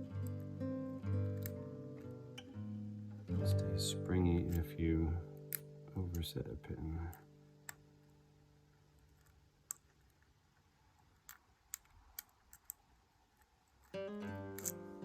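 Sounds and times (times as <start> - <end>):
lock pick clicking in lock: 14.5 - 14.8.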